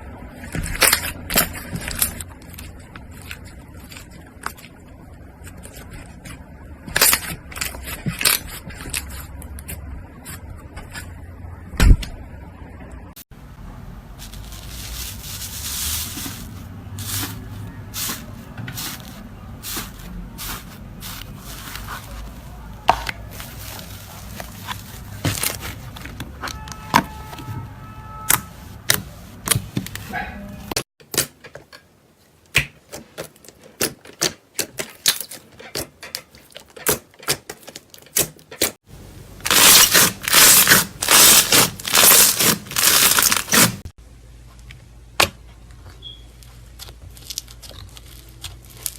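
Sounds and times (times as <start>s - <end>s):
crackly slime squishes: 0.4s - 11.1s, 32.5s - 38.8s, 39.4s - 43.8s, 45.7s - 48.9s.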